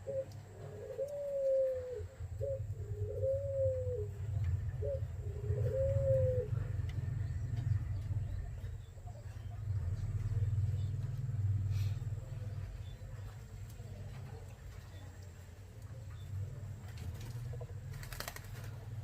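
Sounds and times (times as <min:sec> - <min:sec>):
dove cooing: 0:00.0 - 0:07.2
steady low rumble: 0:00.0 - 0:19.0.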